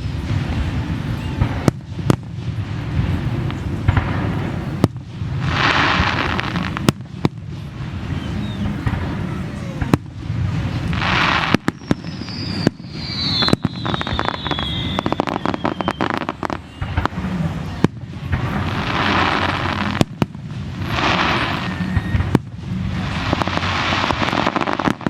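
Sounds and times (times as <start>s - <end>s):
fireworks hissing: 0.0s - 25.0s
fireworks shells bursting: 0.0s - 25.0s
low rumble: 0.0s - 25.0s
whistle falling in pitch: 11.7s - 17.0s, 21.3s - 22.3s.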